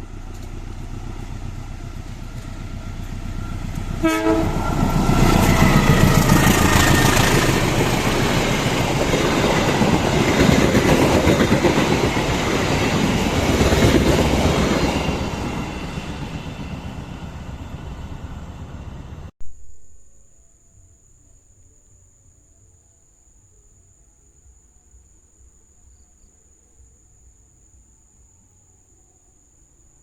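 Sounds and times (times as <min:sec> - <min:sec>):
train rumbling and clattering: 0:00.0 - 0:19.3
train horn: 0:04.0 - 0:06.1.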